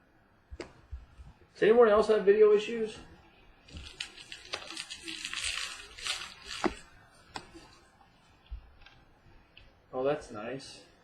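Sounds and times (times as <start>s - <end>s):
cards rustling: 3.6s - 9.1s.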